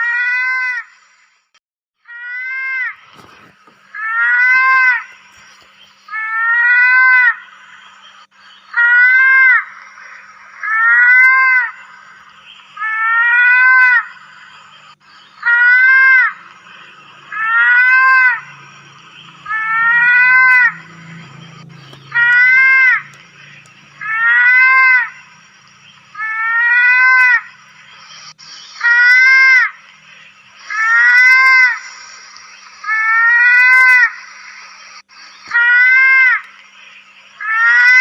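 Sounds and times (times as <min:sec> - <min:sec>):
mouse-deer high cry: 0:04.0 - 0:05.0, 0:17.3 - 0:18.4, 0:24.0 - 0:25.1, 0:26.2 - 0:27.5, 0:30.7 - 0:31.8, 0:37.4 - 0:38.0.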